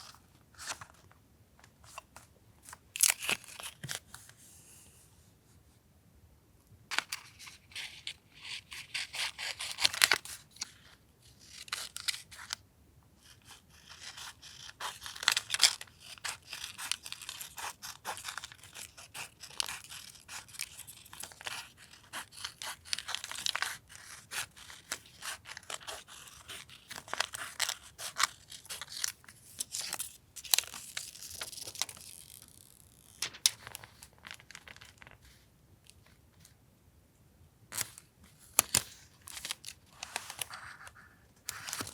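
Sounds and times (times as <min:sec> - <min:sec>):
paper rustling: 0:00.0 - 0:01.1, 0:19.5 - 0:35.4, 0:37.7 - 0:41.9
paper tearing: 0:29.8 - 0:33.8.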